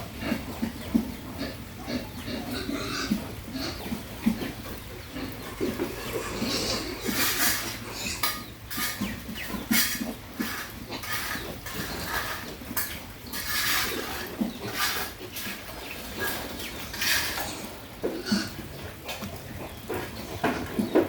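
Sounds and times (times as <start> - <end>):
pig grunting: 0.0 - 12.8, 13.4 - 20.2
pig eating noisily: 0.0 - 21.0.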